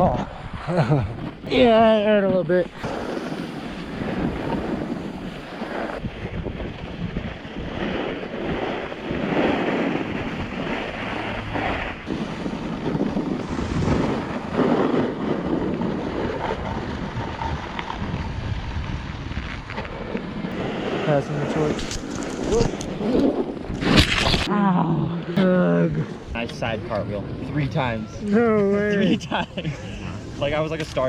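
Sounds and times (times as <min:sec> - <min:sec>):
wind rushing over microphone: 0:00.0 - 0:31.0
snowboard carving through snow: 0:00.4 - 0:24.5.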